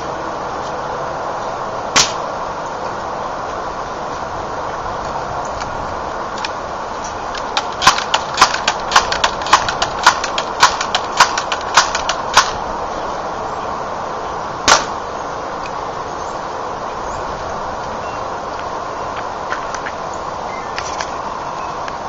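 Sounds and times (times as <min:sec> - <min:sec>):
air rifle firing crack: 0:01.9 - 0:02.2, 0:07.6 - 0:12.6, 0:14.6 - 0:15.0
air rifle pump clacks: 0:07.4 - 0:12.6.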